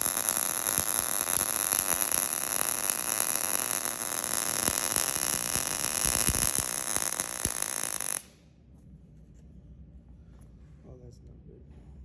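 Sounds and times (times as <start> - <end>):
sharp pops: 0.0 - 8.4
welding arc crackling and hissing: 0.0 - 8.4.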